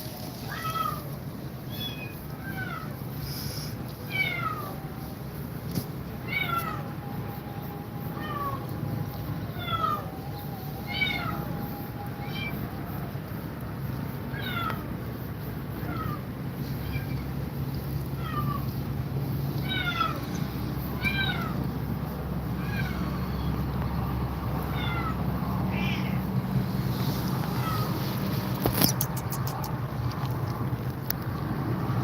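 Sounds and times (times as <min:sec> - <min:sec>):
cat meowing: 0:00.5 - 0:03.0, 0:04.0 - 0:05.2, 0:06.2 - 0:12.9, 0:14.3 - 0:15.0, 0:15.8 - 0:17.3, 0:18.1 - 0:18.8, 0:19.5 - 0:21.7, 0:22.5 - 0:23.4, 0:24.6 - 0:26.3, 0:27.4 - 0:29.7.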